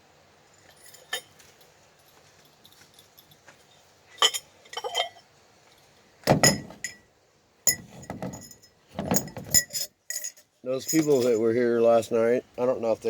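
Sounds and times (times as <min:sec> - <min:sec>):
metal cookware clinking: 0:04.2 - 0:05.2.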